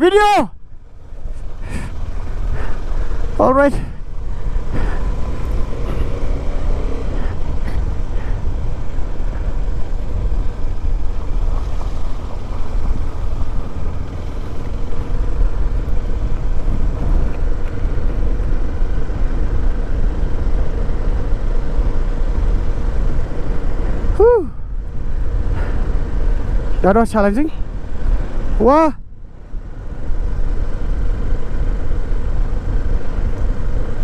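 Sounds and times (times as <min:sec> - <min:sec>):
motorcycle engine running: 0:00.6 - 0:26.8.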